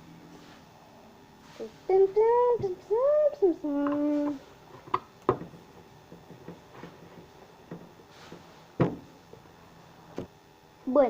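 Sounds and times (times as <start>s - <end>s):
objects knocking on a table: 4.8s - 9.1s.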